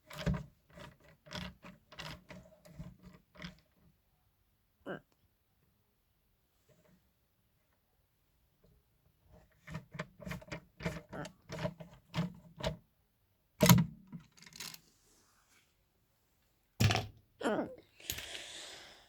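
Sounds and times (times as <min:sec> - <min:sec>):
knocks and clatters of parts: 0:09.5 - 0:12.8, 0:13.6 - 0:14.8, 0:16.8 - 0:17.2.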